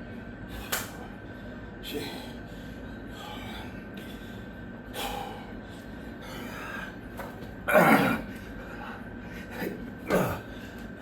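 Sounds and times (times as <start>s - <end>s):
man breathing hard: 0.5s - 7.0s.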